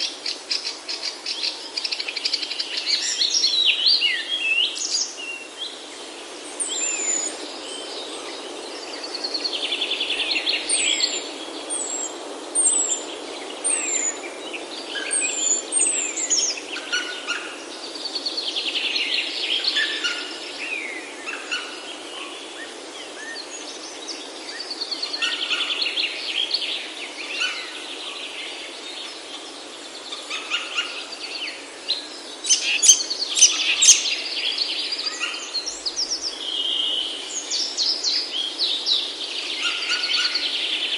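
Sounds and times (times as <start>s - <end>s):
steady low hiss: 0.0s - 40.9s
birds trilling: 32.3s - 38.3s
sharp high bird calls: 32.5s - 34.1s.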